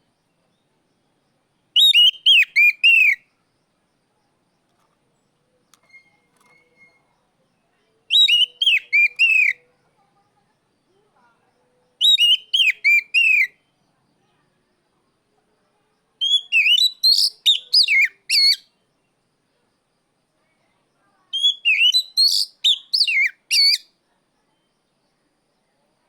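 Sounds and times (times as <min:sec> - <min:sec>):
bird whistling phrases: 0:01.8 - 0:03.2, 0:08.1 - 0:09.6, 0:12.0 - 0:13.6, 0:16.2 - 0:18.7, 0:21.4 - 0:23.9.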